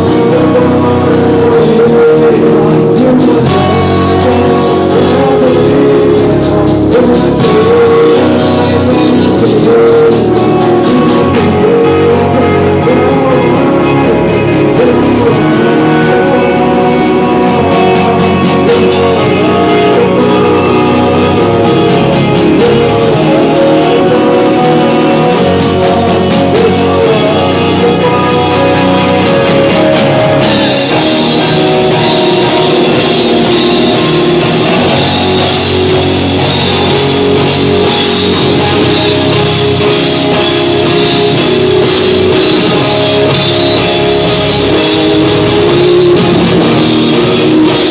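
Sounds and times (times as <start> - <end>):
drum kit: 0.0 - 47.9
electric guitar: 0.0 - 47.9.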